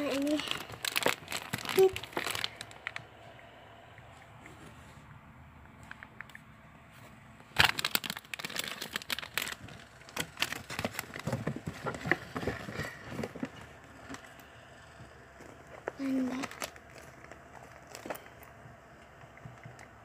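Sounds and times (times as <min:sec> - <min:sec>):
packaging crinkling and rustling: 0:00.0 - 0:03.1, 0:07.5 - 0:14.5, 0:15.4 - 0:18.6.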